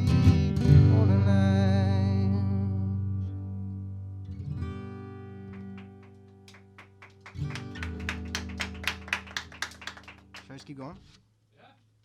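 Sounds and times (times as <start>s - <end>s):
acoustic guitar strumming: 0.0s - 9.6s.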